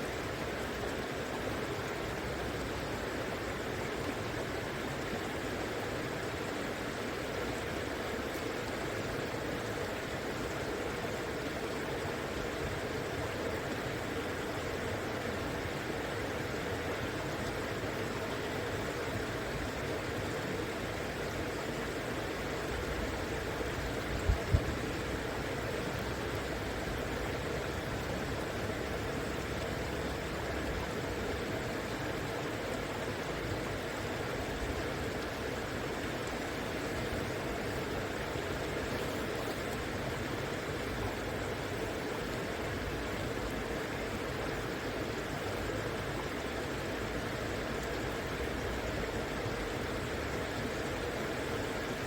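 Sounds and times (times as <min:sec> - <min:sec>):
river water flowing: 0:00.0 - 0:52.0.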